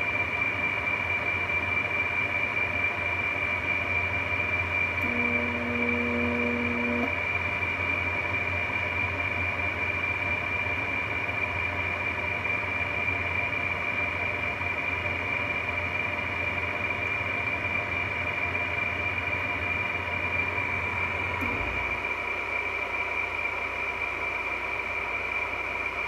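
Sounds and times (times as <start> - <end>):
window air conditioner running: 0.0 - 26.0
high-pitched whine: 5.0 - 7.1.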